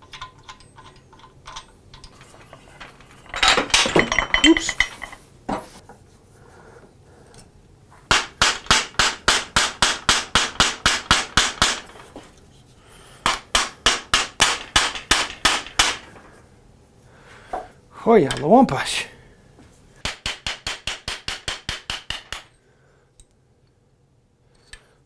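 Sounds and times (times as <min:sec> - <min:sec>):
rapid hammer-like striking: 0:08.1 - 0:12.3, 0:13.2 - 0:16.2, 0:20.0 - 0:22.5.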